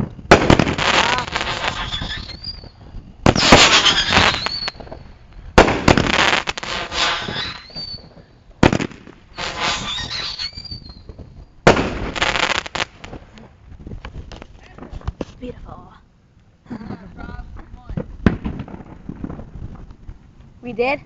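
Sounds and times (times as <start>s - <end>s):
firework blasts: 0.0s - 15.6s, 17.7s - 20.4s
firework crackling: 0.0s - 16.0s
high whistling tones: 1.6s - 2.8s, 3.4s - 4.9s, 6.9s - 8.1s, 9.4s - 11.1s
sharp cracks: 3.3s - 5.0s, 5.6s - 8.0s, 8.6s - 10.8s, 11.6s - 15.2s.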